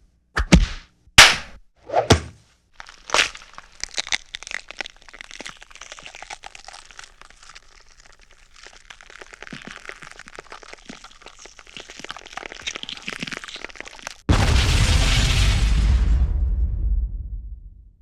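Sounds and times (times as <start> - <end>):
small crackling and crunching: 2.7 - 15.5
sharp cracking hits: 14.3 - 17.7.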